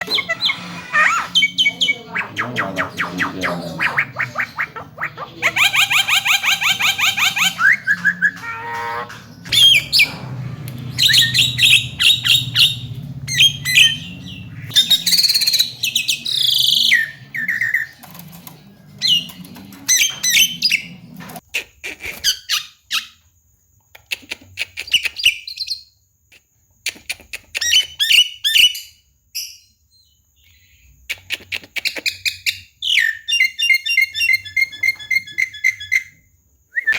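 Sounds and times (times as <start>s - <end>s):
bird whistles squawks and chirps: 0.0s - 10.2s, 11.0s - 18.0s
bird rattling trill: 3.8s - 21.4s.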